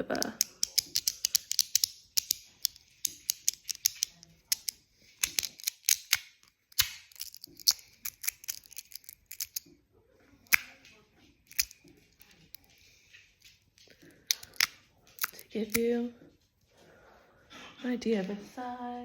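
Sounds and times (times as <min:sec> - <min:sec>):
magnetic fidget toy clicking: 0:00.1 - 0:06.2.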